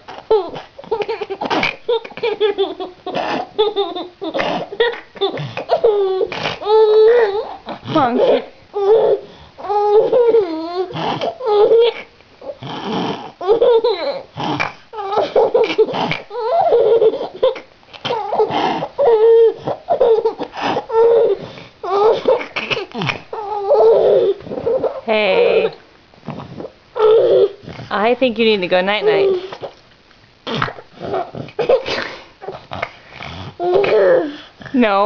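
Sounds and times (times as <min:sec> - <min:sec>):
child giggling and laughing: 0:00.3 - 0:08.5.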